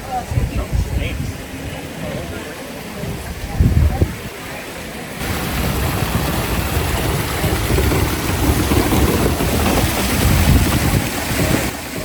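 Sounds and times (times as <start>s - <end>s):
wind noise on microphone: 0.0s - 4.5s, 5.2s - 12.0s
rain hissing: 1.3s - 12.0s.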